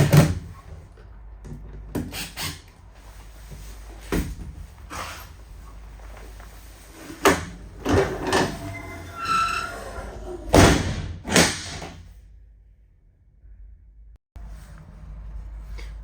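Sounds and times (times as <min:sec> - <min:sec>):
door squeak: 0:07.9 - 0:10.4.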